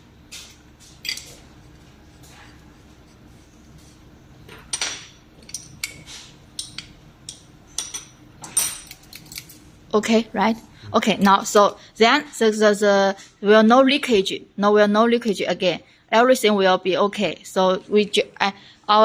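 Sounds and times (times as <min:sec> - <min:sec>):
small metal parts clicking: 0:08.6 - 0:09.6.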